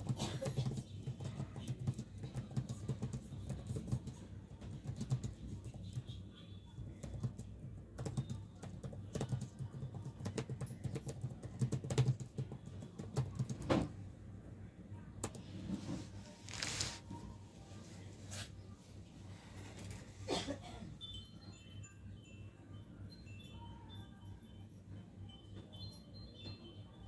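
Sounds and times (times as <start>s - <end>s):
computer keyboard typing: 0.0s - 6.2s, 6.8s - 13.9s, 15.2s - 15.4s.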